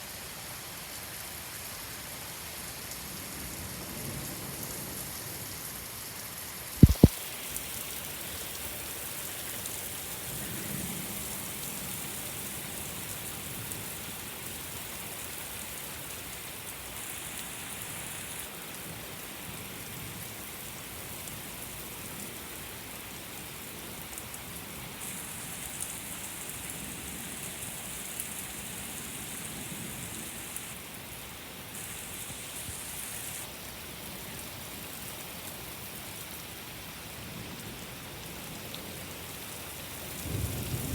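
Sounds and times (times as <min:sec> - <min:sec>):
steady rain: 0:00.0 - 0:40.9
loud sharp thumps: 0:06.8 - 0:07.2
thunder rumbling: 0:40.2 - 0:40.9.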